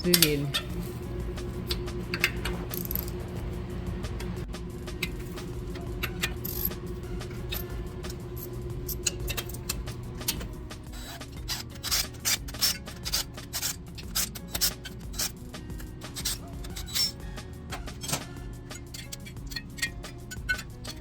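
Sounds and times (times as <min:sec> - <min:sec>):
music with low held tones: 0:00.0 - 0:21.0
sharp clicks and scrapes: 0:04.9 - 0:21.0.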